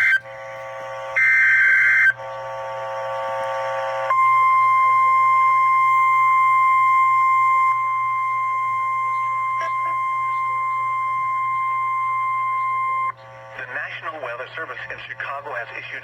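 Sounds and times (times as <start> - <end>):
buzzy tone: 0.0 - 13.9
digital data tones: 6.5 - 13.2.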